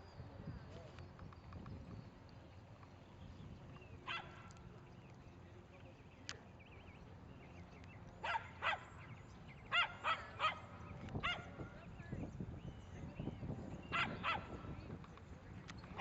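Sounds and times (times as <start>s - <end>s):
dog barking: 8.2s - 8.9s, 9.7s - 10.6s, 11.2s - 11.5s, 13.9s - 14.5s.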